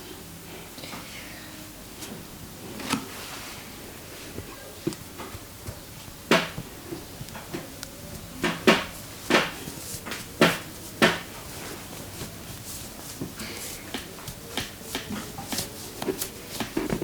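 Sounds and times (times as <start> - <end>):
hands slapping body: 4.9 - 17.0.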